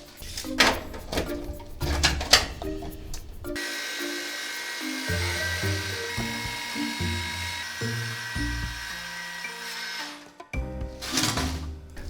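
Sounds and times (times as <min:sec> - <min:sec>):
steady hiss: 0:00.0 - 0:07.1
light background music: 0:00.0 - 0:12.0.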